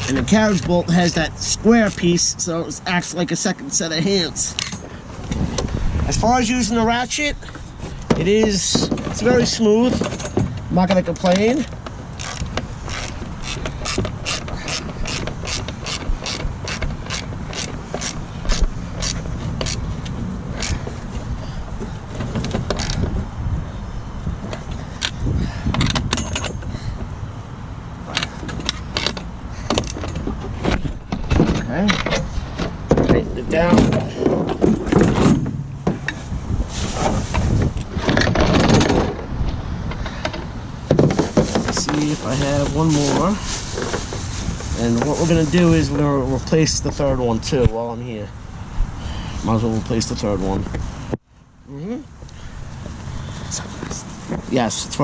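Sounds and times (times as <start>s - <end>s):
ratchet clicking: 12.2s - 19.8s.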